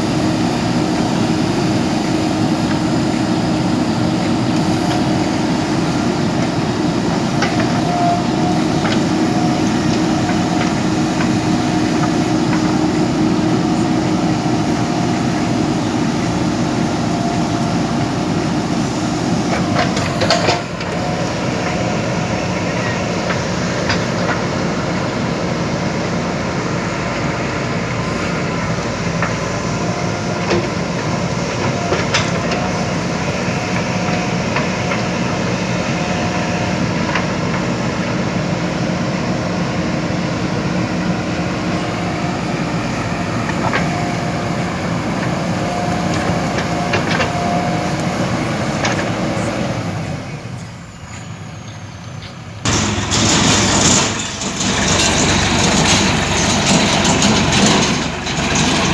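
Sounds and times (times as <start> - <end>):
heavy diesel machinery running: 0.0 - 58.9
sharp metallic knocks: 52.6 - 58.9.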